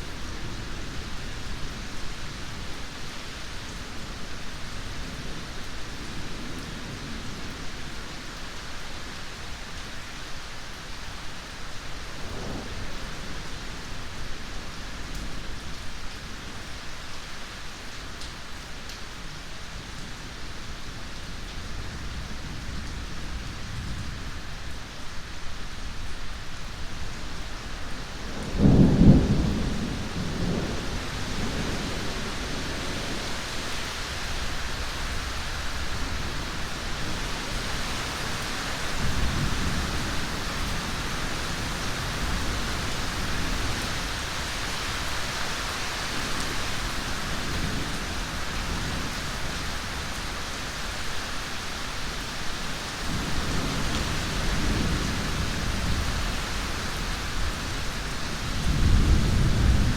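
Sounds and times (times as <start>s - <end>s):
heavy rain: 0.0s - 59.9s
thunder clap and rumble: 28.3s - 33.2s, 58.6s - 59.9s.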